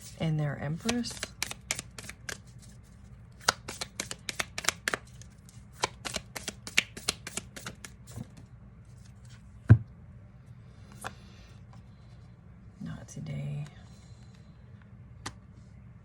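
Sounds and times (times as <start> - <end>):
cards being shuffled: 0.7 - 9.4.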